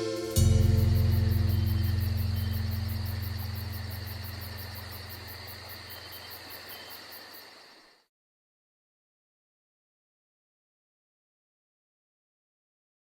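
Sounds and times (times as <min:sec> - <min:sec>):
low bass note ringing: 0:00.0 - 0:05.5
crickets chirping: 0:00.0 - 0:08.1.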